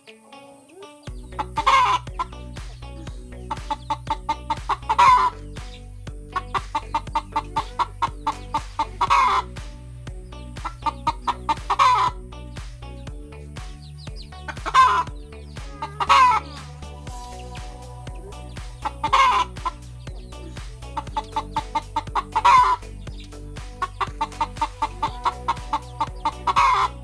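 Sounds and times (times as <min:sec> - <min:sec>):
hen squawking: 0:00.7 - 0:05.5, 0:06.4 - 0:09.5, 0:10.6 - 0:12.2, 0:14.5 - 0:17.4, 0:18.4 - 0:19.9, 0:20.8 - 0:23.0, 0:23.8 - 0:27.0
hen clucking: 0:01.1 - 0:05.6, 0:06.3 - 0:09.5, 0:10.6 - 0:12.2, 0:14.4 - 0:16.6, 0:18.2 - 0:27.0.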